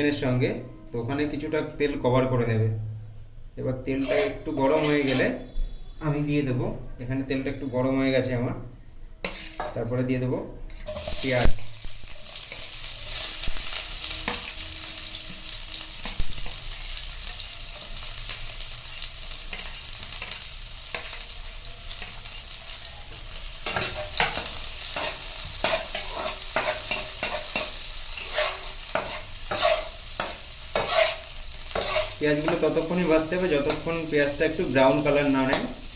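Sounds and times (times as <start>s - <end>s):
spatula scraping a pan: 3.9s - 5.6s, 9.2s - 9.8s, 10.7s - 11.4s, 23.6s - 33.9s
onions sizzling in oil: 10.8s - 35.9s.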